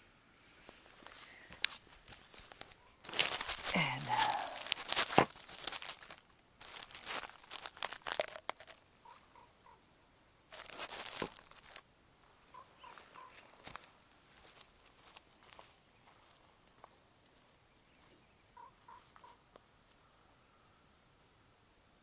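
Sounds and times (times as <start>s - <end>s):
rustling and crinkling handling: 0.6s - 9.2s, 10.5s - 11.8s.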